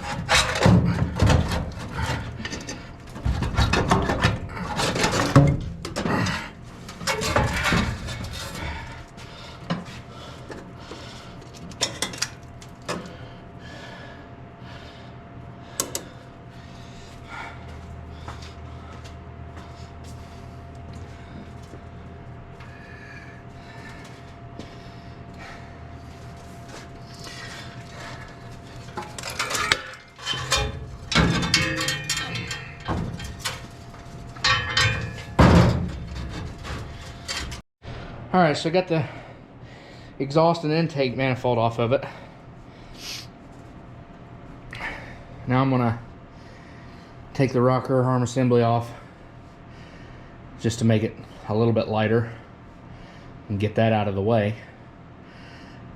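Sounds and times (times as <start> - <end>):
tools clanking on metal: 0.0 - 9.0, 11.6 - 13.1, 27.3 - 37.6
faint steady hum: 0.0 - 55.9.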